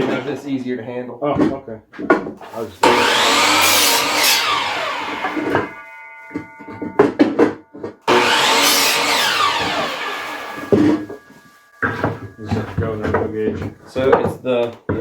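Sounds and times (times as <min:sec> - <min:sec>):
power tool motor: 0:02.8 - 0:05.8, 0:08.1 - 0:11.2
spinning blade ringing: 0:03.6 - 0:12.6
wooden boards knocking: 0:11.8 - 0:15.0.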